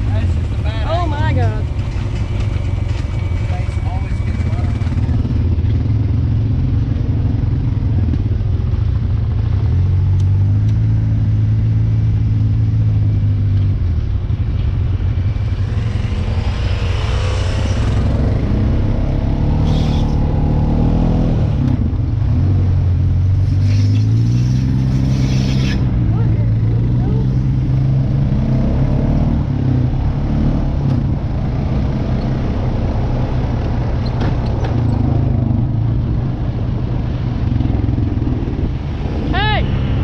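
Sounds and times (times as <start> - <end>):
vehicle engine revving: 14.9 - 40.0.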